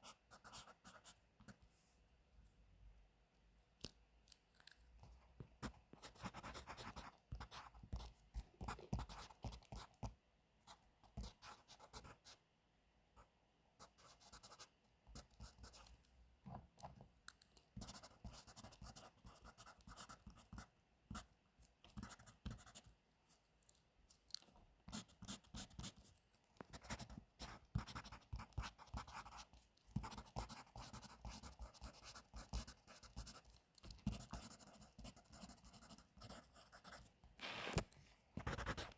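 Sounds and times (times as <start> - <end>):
pencil writing on paper: 0.0 - 1.2, 5.6 - 10.1, 11.2 - 12.3, 13.8 - 15.9, 17.8 - 22.9, 24.9 - 26.1, 26.7 - 37.8, 38.4 - 38.9.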